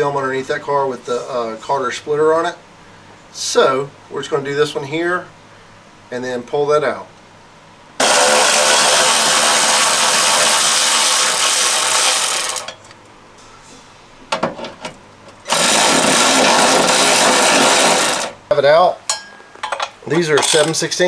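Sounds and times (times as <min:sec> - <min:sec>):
power tool running: 0:08.0 - 0:12.8, 0:15.5 - 0:18.4.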